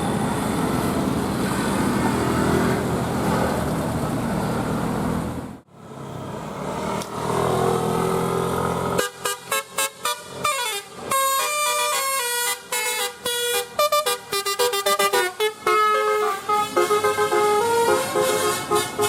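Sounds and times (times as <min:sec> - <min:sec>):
traffic engines running: 0:00.0 - 0:19.0
bus musical horn tooting: 0:08.9 - 0:19.0.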